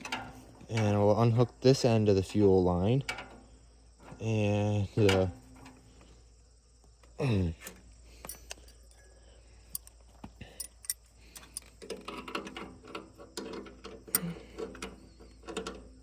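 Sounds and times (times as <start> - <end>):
hand tools clinking on metal: 7.6 - 9.1, 9.7 - 16.0.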